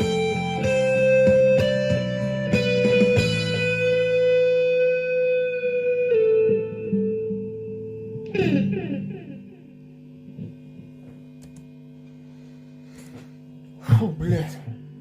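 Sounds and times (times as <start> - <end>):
guitar chord ringing: 0.0 - 13.8.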